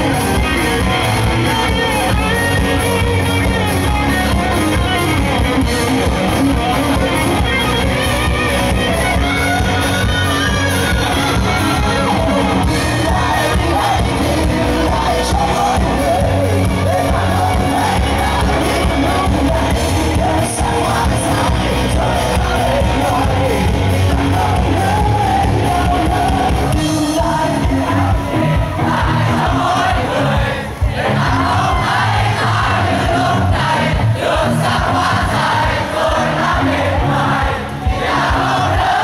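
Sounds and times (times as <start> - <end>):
rock band playing live: 0.0 - 39.0
person singing: 9.1 - 30.3.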